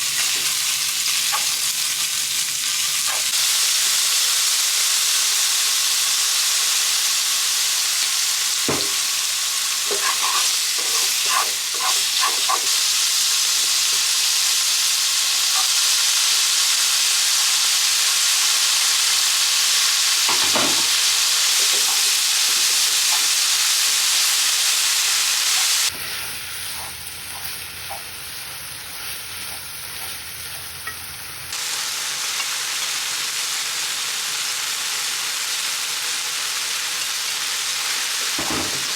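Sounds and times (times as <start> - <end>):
food sizzling in a pan: 0.0 - 38.9
utensil scraping pan: 9.8 - 12.7.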